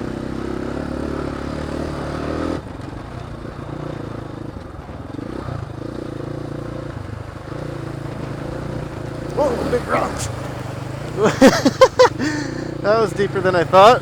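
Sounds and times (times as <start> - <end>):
dirt bike engine revving: 7.5 - 14.0.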